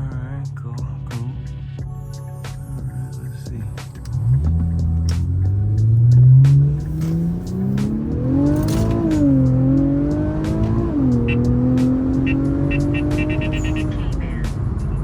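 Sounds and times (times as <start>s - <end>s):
car engine accelerating hard: 4.0s - 15.0s.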